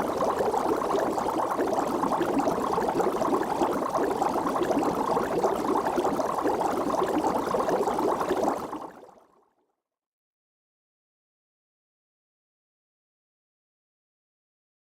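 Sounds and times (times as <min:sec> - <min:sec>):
water bubbling: 0:00.0 - 0:09.1.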